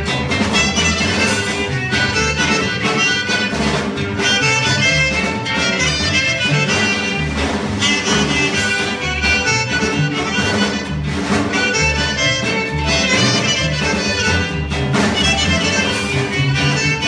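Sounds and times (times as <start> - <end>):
live band dance music: 0.0 - 17.0.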